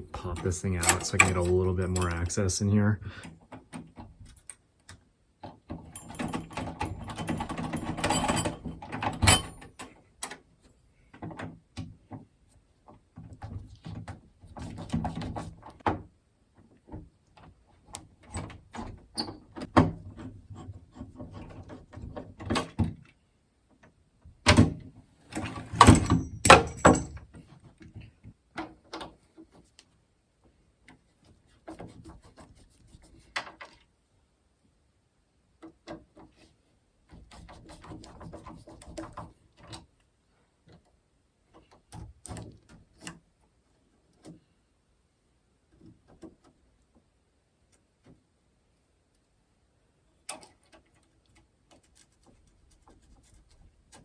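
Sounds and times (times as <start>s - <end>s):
doorknob hardware clicking and rattling: 5.5s - 10.4s, 25.4s - 27.4s.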